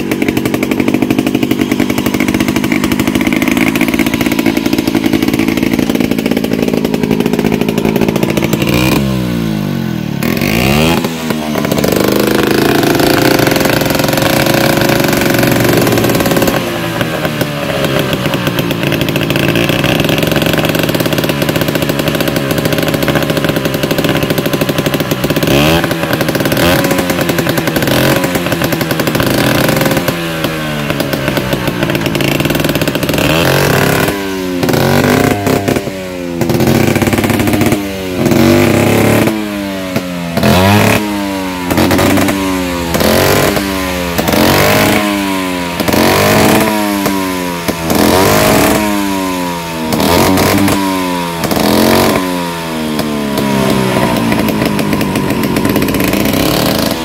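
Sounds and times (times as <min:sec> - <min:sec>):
scooter engine revving: 0:00.0 - 0:57.0.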